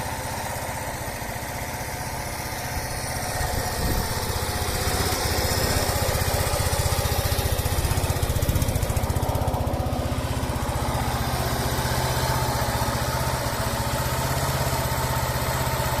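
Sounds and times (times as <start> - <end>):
motorcycle engine idling: 0.0 - 16.0.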